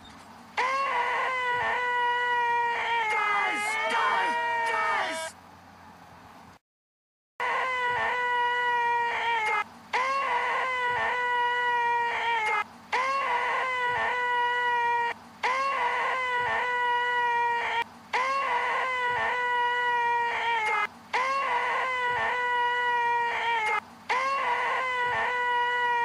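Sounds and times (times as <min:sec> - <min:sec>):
person making nasal whine: 0:09.4 - 0:11.2, 0:12.4 - 0:14.4, 0:15.4 - 0:16.8, 0:18.1 - 0:19.4, 0:20.6 - 0:22.4, 0:23.6 - 0:25.5.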